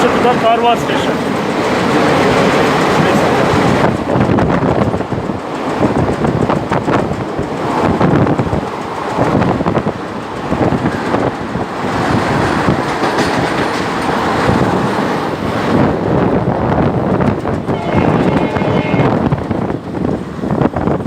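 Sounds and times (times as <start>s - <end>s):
wheels clattering over track: 0.0s - 16.0s
train rumbling on rails: 0.0s - 21.0s.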